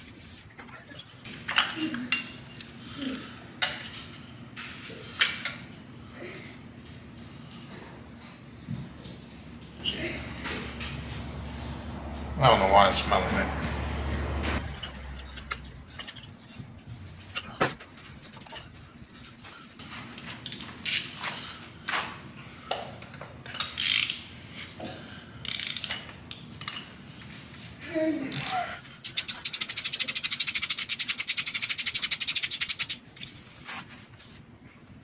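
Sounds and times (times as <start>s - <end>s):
tools clinking and knocking: 22.7s - 24.3s, 25.5s - 26.9s, 28.3s - 33.4s
ratchet wrench clicking: 23.6s - 24.2s, 25.5s - 26.0s, 28.3s - 33.4s.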